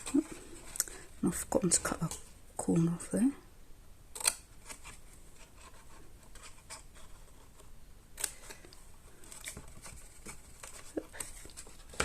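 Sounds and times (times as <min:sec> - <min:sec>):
paper handling: 0:04.2 - 0:12.0.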